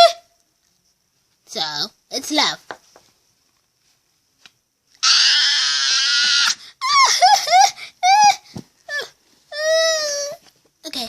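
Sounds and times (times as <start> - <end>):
short squeaky cries: 5.0 - 7.1
shrill raspy squeal: 5.0 - 9.0.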